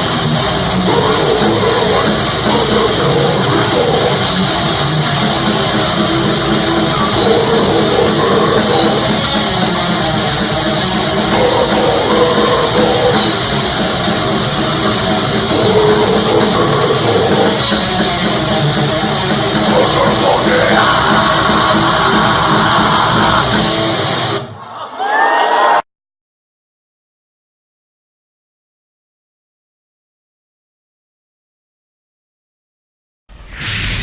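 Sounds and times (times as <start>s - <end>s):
drum kit: 0.0s - 24.5s
distorted electric guitars riffing: 0.0s - 24.6s.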